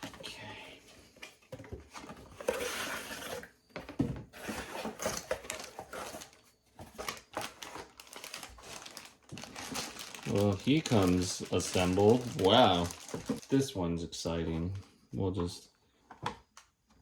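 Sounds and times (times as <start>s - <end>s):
packaging rustling and crinkling: 1.2s - 13.8s.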